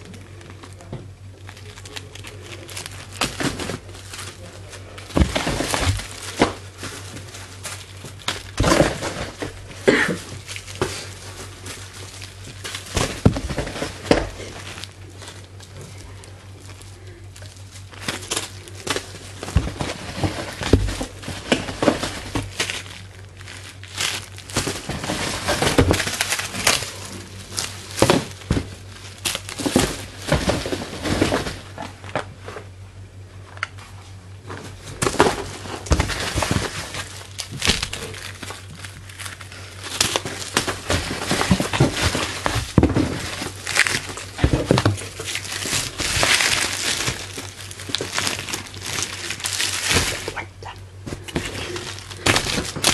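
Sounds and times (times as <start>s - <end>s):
packaging crinkling: 0.0s - 32.7s, 34.4s - 52.9s
knocks and rustles: 0.0s - 32.8s, 33.4s - 52.9s.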